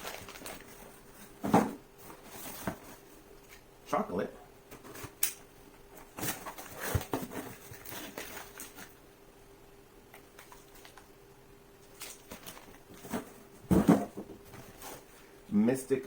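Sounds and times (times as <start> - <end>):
packaging rustling and clicking: 0.0 - 1.0, 6.1 - 9.0, 10.1 - 11.1, 12.0 - 15.0
faint steady hum: 0.0 - 16.0.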